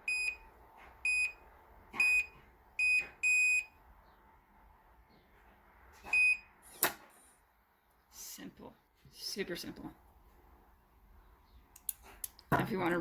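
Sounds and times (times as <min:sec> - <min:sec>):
padlock electronic beeps: 0:00.0 - 0:00.4, 0:01.1 - 0:01.4, 0:02.0 - 0:03.7, 0:06.1 - 0:06.5.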